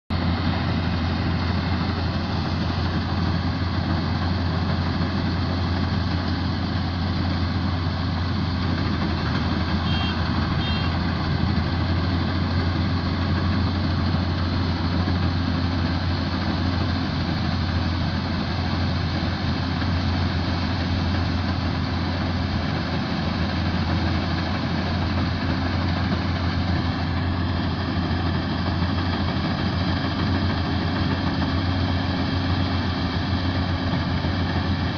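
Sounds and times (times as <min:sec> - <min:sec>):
combine harvester engine running: 0:00.1 - 0:34.9.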